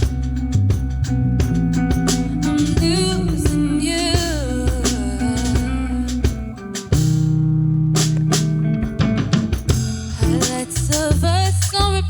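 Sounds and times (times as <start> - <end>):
electric guitar: 0.0 - 11.8
bass guitar: 0.0 - 12.0
drum kit: 0.0 - 12.0
person singing: 2.2 - 6.8, 10.2 - 12.0.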